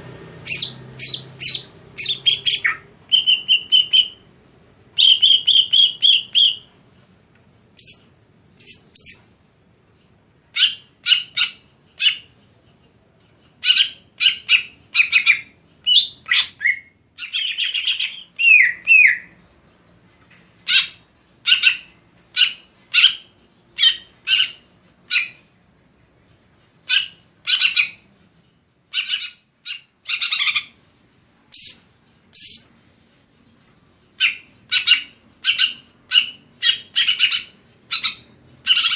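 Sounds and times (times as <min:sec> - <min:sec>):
bird chirping and whistling: 0:00.4 - 0:04.2, 0:05.0 - 0:06.7, 0:07.8 - 0:09.3, 0:13.6 - 0:19.3.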